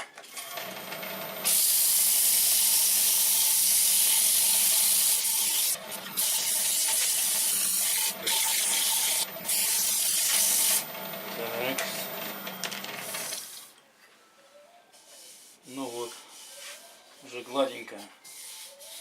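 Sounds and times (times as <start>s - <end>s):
lathe motor humming: 0.6s - 13.5s
sandpaper hissing on spinning wood: 1.5s - 10.8s, 15.0s - 19.0s.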